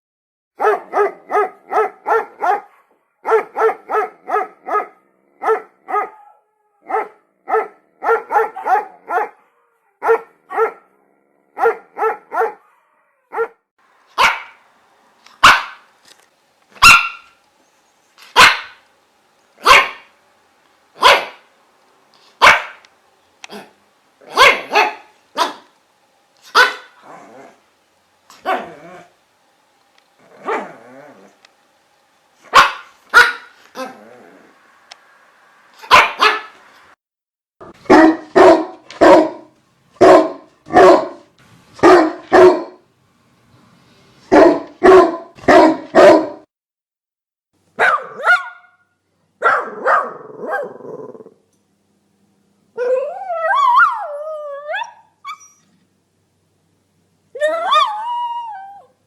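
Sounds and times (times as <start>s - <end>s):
dogs barking: 0.6s - 10.9s, 11.5s - 14.7s, 15.3s - 16.0s, 16.7s - 17.4s, 18.2s - 19.0s, 19.6s - 20.3s, 20.9s - 21.6s, 22.3s - 25.8s, 26.4s - 29.2s, 30.2s - 31.5s, 32.4s - 34.5s, 35.8s - 36.9s, 37.7s - 42.8s, 44.3s - 46.5s, 47.8s - 48.8s, 49.4s - 50.8s.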